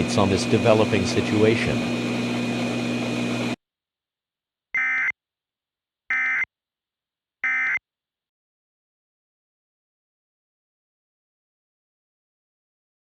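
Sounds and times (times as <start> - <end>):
noisy drone with high whine: 0.0 - 3.6.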